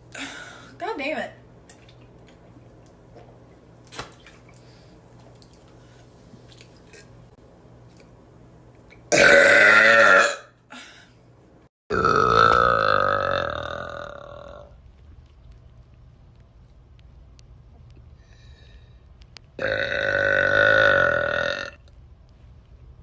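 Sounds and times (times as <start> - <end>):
woman burping: 9.1 - 10.8, 11.9 - 14.7, 19.6 - 21.8.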